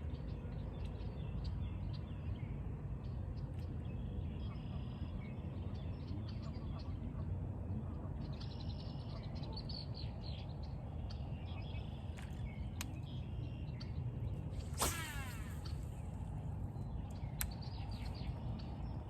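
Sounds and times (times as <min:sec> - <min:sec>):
low outdoor rumble: 0:00.0 - 0:19.0
small birds chirping: 0:00.0 - 0:19.0
brief swishing: 0:14.6 - 0:16.0.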